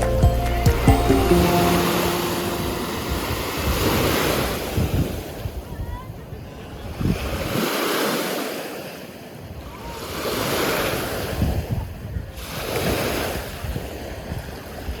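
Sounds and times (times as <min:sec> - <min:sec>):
ocean surf washing ashore: 0:00.9 - 0:05.6.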